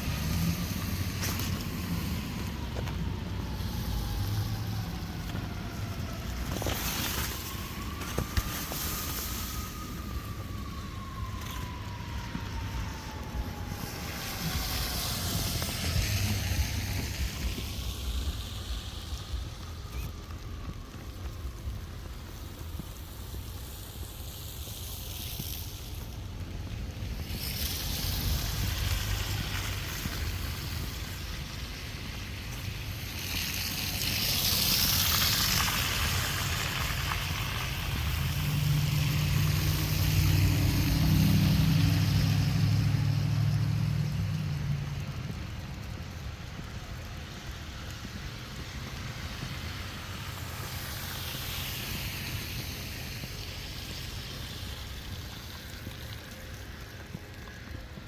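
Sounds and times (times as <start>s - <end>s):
engine approaching: 0.0s - 21.6s, 26.3s - 58.0s
vehicles passing with tyre hiss: 0.0s - 58.0s
wind rumbling on microphone: 0.0s - 58.0s.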